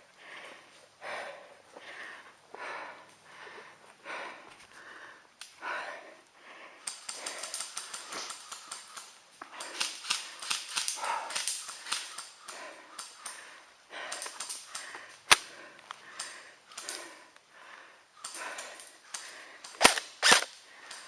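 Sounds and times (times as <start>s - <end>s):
airsoft gun crack: 14.1s - 15.5s, 18.2s - 21.0s.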